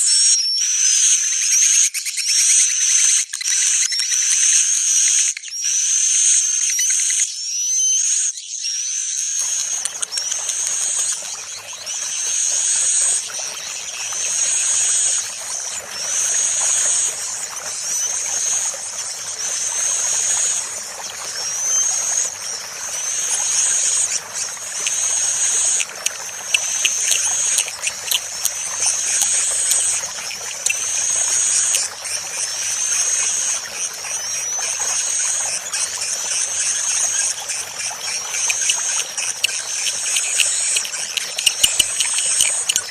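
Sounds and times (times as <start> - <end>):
recorded bird call: 0.0 - 42.9
quick chattering ticks: 9.4 - 11.5, 23.7 - 31.9, 36.0 - 42.9.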